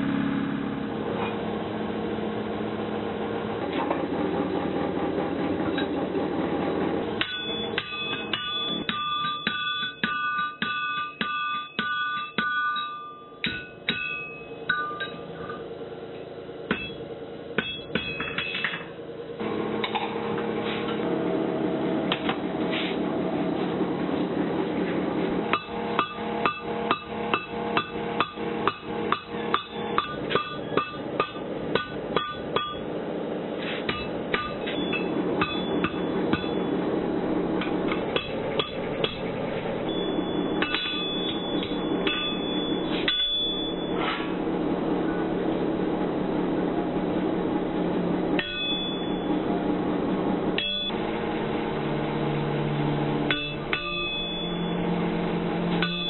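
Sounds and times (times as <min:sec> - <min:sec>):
steady hum: 0:00.0 - 0:56.0
hammer striking iron on anvil: 0:07.2 - 0:15.7, 0:16.7 - 0:18.9, 0:25.5 - 0:32.9, 0:33.8 - 0:36.7, 0:37.6 - 0:39.3, 0:39.9 - 0:44.3, 0:48.4 - 0:49.3, 0:50.5 - 0:51.0, 0:53.3 - 0:54.8, 0:55.8 - 0:56.0.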